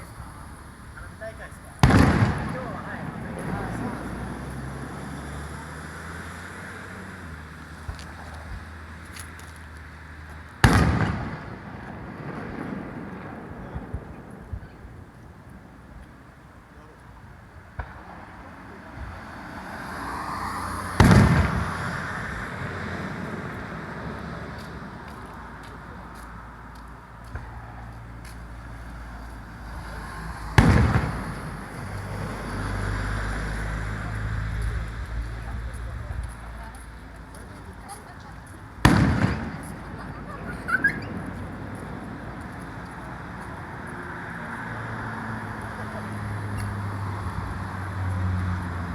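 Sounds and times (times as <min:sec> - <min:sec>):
firework shell boom: 0:01.8 - 0:03.6, 0:10.6 - 0:13.5, 0:21.0 - 0:22.0, 0:30.6 - 0:31.6, 0:38.9 - 0:39.8.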